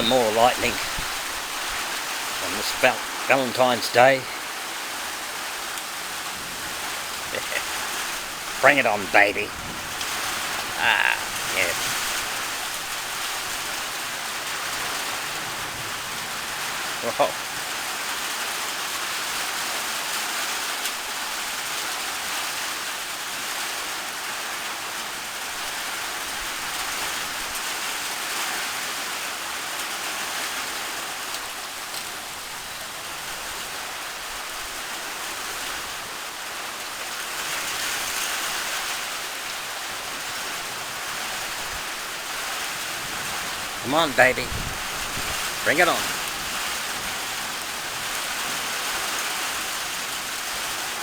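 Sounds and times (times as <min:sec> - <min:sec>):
steady rain falling: 0:00.0 - 0:51.0.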